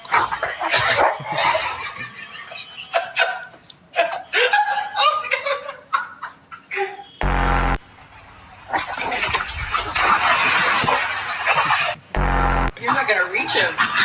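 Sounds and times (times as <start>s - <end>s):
loud blast of noise: 7.2s - 7.9s, 12.1s - 12.8s.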